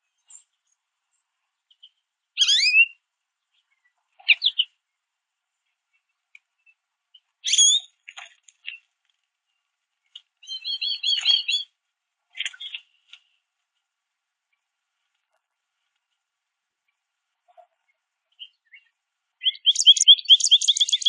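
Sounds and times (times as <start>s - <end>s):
goldfinches chirping: 18.3s - 21.0s.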